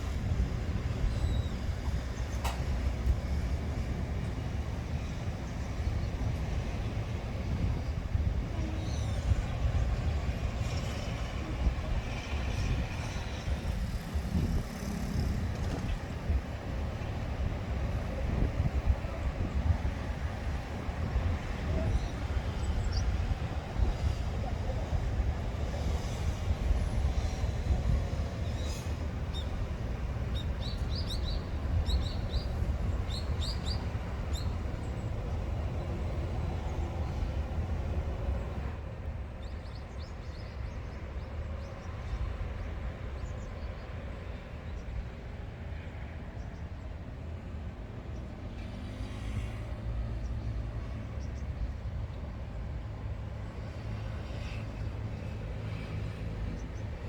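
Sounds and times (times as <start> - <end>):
steady low rumble: 26.2 - 38.7.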